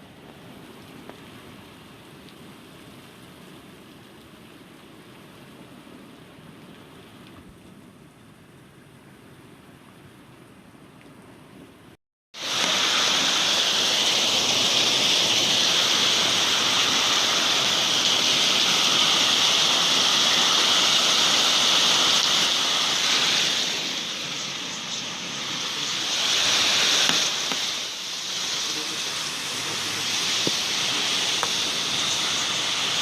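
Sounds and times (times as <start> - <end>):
heavy rain pouring: 12.4 - 33.0.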